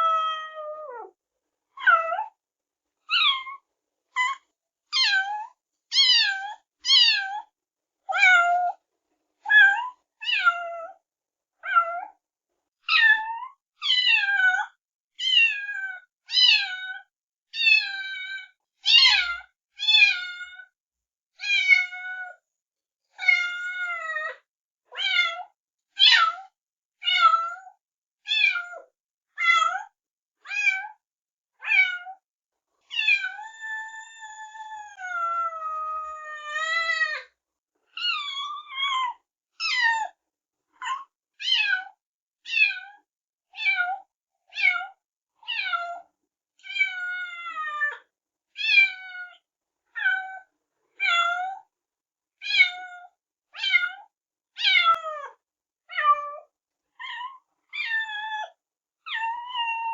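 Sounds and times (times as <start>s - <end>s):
kitten meowing: 5.0s - 7.4s, 32.9s - 37.1s.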